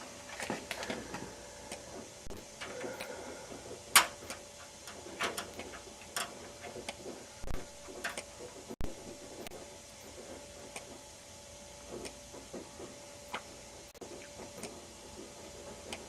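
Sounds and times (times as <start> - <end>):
tester probes clicking: 3.9 - 10.1.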